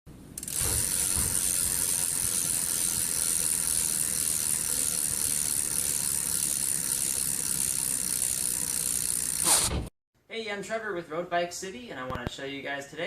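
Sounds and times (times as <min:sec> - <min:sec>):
bicycle freewheel clicking: 0:00.4 - 0:09.7.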